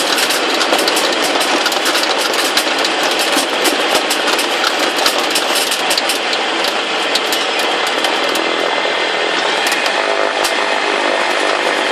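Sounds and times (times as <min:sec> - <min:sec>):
rapid crackle of clicks: 0:00.0 - 0:08.4
aircraft engine buzz in cabin: 0:00.0 - 0:11.9.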